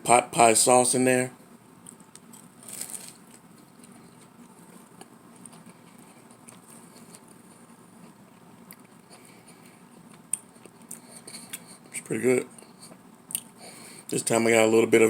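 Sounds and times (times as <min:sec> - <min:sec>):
pie crust crackling: 0:01.8 - 0:11.8
person chewing: 0:01.8 - 0:11.9, 0:12.6 - 0:13.8.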